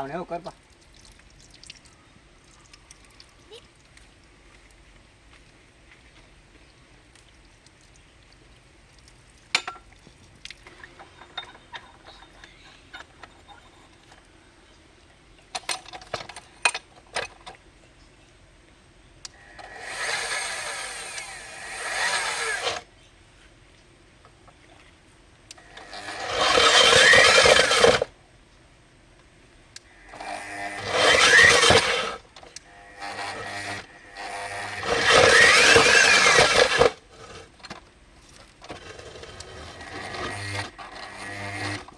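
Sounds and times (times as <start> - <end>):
core drill running loudly: 19.4 - 22.8, 25.6 - 28.1, 30.0 - 37.4, 38.9 - 41.9
clicks and knocks of drill rig: 19.6 - 22.8, 25.5 - 28.1, 30.2 - 41.9.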